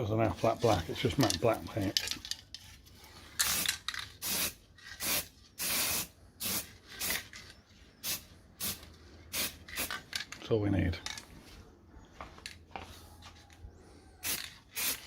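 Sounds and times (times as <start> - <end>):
aerosol spray hissing: 4.2 - 7.1.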